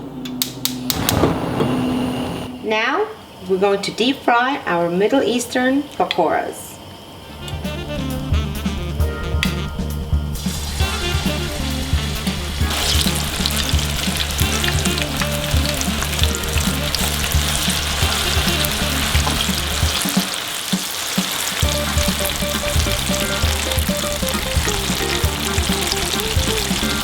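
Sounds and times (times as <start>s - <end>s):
batter deep-frying in oil: 10.4s - 27.0s.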